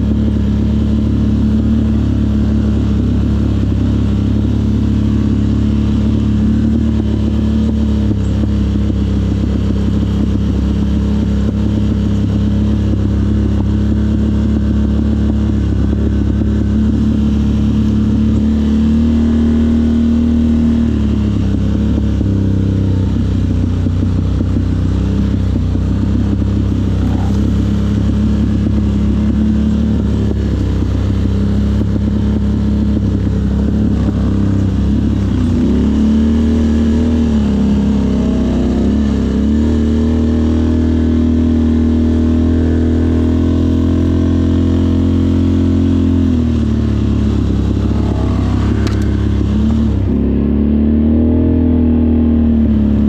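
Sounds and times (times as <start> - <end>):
atv engine running: 0.0 - 53.0.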